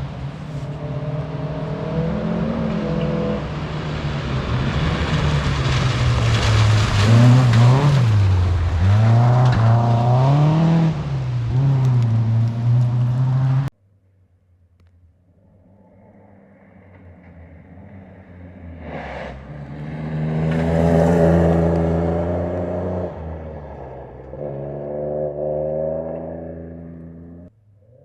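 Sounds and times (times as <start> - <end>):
rally car engine passing: 0.0 - 13.7, 15.4 - 27.5.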